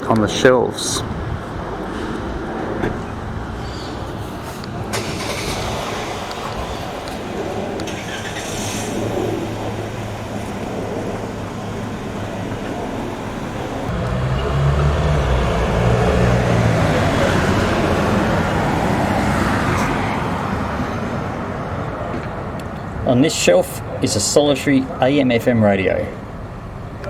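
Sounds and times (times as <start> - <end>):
street traffic noise: 0.0 - 27.0
motor vehicle passing: 0.9 - 22.5.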